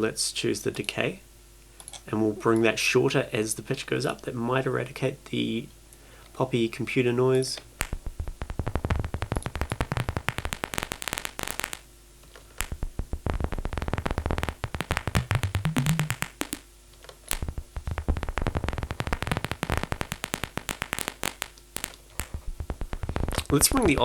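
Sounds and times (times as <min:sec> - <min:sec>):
synthesized paper crumpling: 0:17.3 - 0:24.0.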